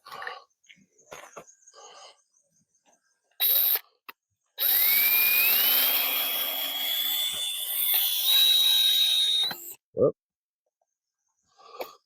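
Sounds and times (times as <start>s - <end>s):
power drill motor whining: 3.4s - 3.8s, 4.6s - 9.8s.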